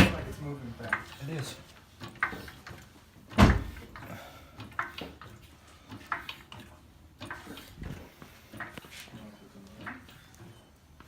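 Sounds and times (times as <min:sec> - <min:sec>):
heavy thump: 0:03.4 - 0:03.8.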